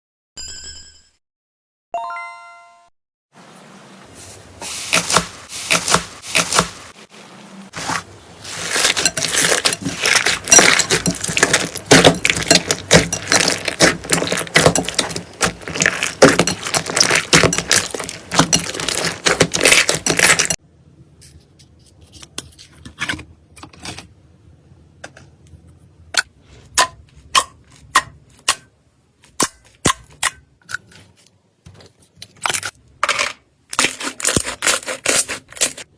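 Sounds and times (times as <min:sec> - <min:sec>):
slime squished by hand: 0:07.8 - 0:20.6.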